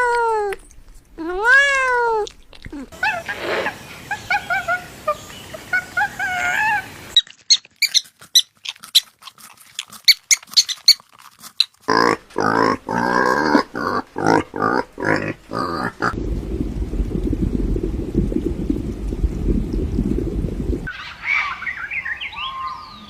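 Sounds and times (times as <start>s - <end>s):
steady low rumble: 16.1s - 20.9s.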